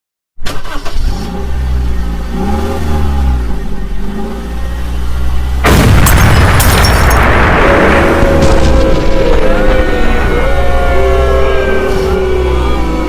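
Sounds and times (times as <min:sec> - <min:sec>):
vehicle engine revving: 0:00.5 - 0:05.8
sudden loud burst of noise: 0:05.6 - 0:10.9.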